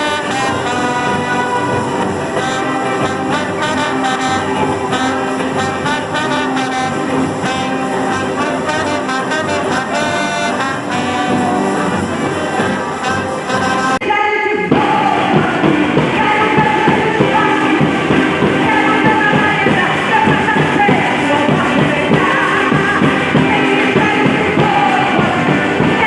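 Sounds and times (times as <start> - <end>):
brass-led orchestra playing: 0.0 - 14.0.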